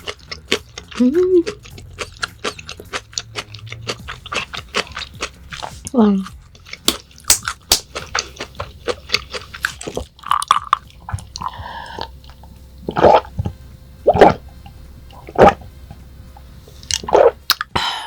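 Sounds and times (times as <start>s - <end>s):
wet chewing: 0.0s - 16.0s, 16.7s - 17.7s.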